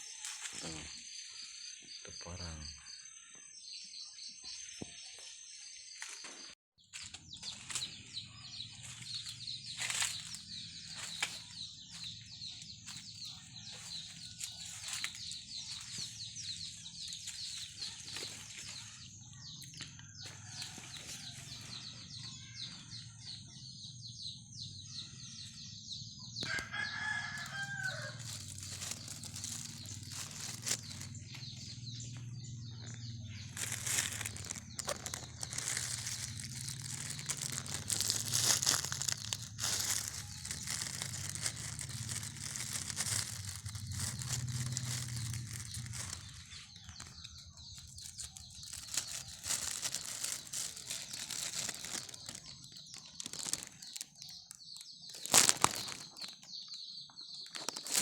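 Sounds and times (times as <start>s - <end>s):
rooster crowing: 26.4s - 29.6s.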